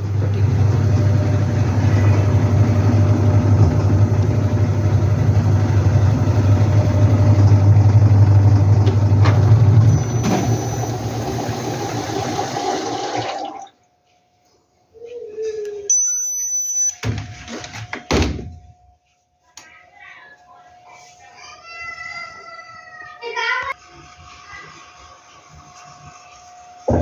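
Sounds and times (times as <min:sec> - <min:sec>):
washing machine motor hum: 0:00.0 - 0:13.8, 0:23.8 - 0:27.0
water rushing in washing machine: 0:00.0 - 0:13.8.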